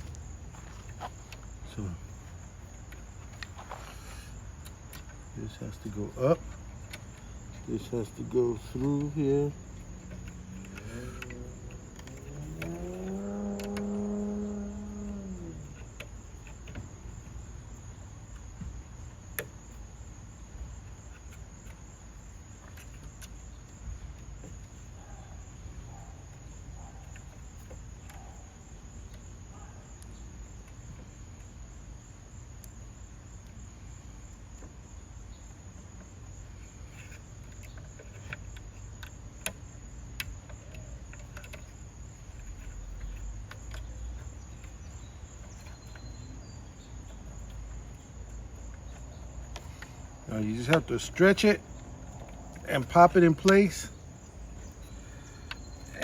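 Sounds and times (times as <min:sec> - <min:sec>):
motor-like hum: 0:07.0 - 0:18.6.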